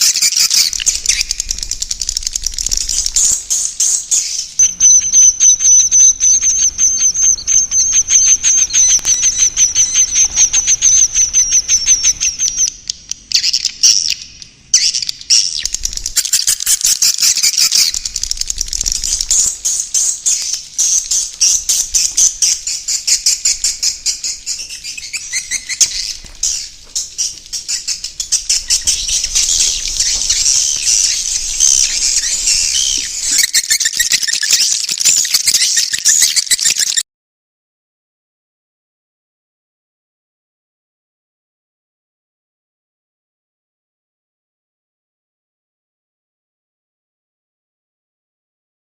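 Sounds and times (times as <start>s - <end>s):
swiftlets chirping and twittering: 0.0s - 12.7s, 13.3s - 37.0s.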